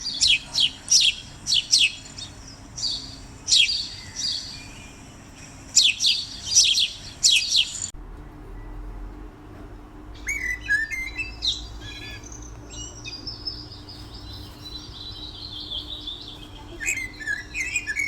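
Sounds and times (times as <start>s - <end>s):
small birds chirping: 0.0s - 8.0s, 10.0s - 18.0s.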